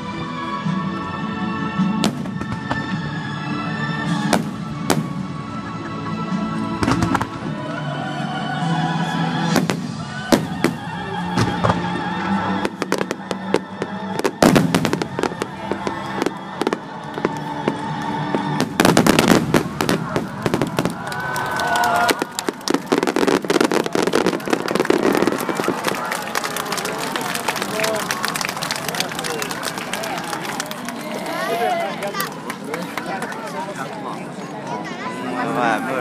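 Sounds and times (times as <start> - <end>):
music playing: 0.0 - 36.0
crackling fireworks bursts: 4.0 - 5.5, 6.8 - 7.6, 9.2 - 31.6
fireworks booming: 4.1 - 5.4, 18.3 - 21.0.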